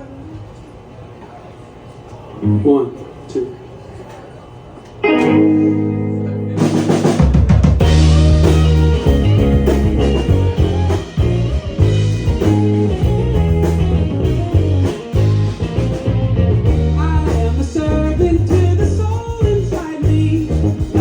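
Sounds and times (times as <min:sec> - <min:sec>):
held guitar chord: 0:05.0 - 0:07.0
bass: 0:05.0 - 0:21.0
drum kit: 0:05.0 - 0:21.0
rock band playing: 0:05.0 - 0:21.0.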